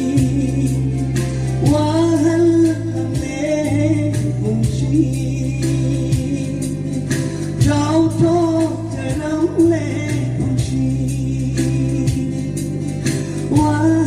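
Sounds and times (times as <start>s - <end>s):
gospel song with singing: 0.0s - 14.0s.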